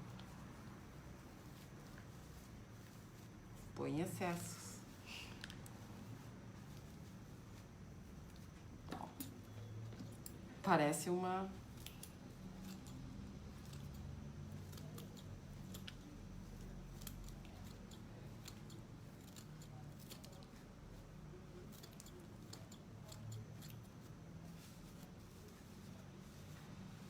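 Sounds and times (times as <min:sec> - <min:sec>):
scissors snipping: 0:11.7 - 0:20.6, 0:21.6 - 0:23.9.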